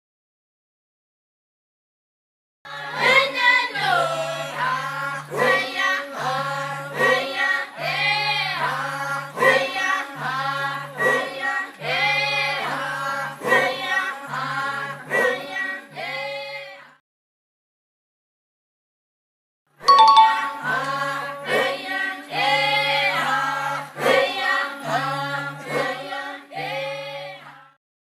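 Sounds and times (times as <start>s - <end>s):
choir singing: 2.7s - 16.8s, 19.9s - 27.7s.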